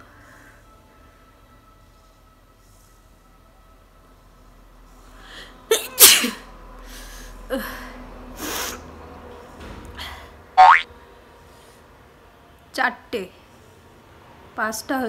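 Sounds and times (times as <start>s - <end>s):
person sneezing: 5.7s - 6.4s.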